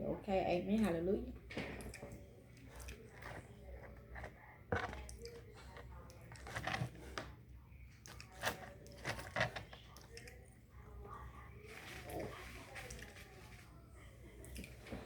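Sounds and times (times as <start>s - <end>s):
person chewing with crunches: 11.8s - 13.4s.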